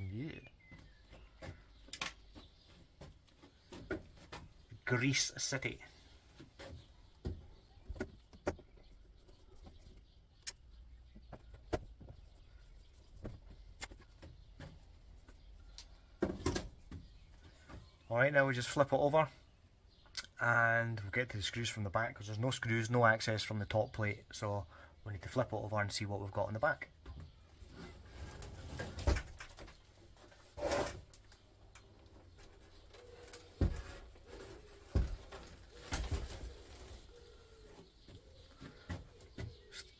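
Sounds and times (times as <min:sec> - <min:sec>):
scraping on work surface: 0:30.4 - 0:31.0.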